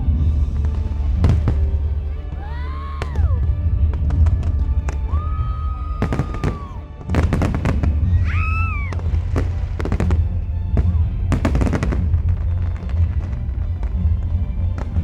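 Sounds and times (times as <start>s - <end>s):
fireworks cracking and banging: 0.0s - 15.0s
low rumble: 0.0s - 15.0s
firework whistling: 4.8s - 15.0s.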